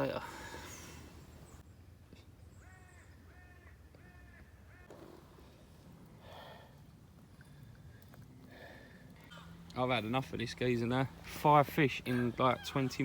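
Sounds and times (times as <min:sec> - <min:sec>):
distant crow cawing: 0:02.6 - 0:05.2.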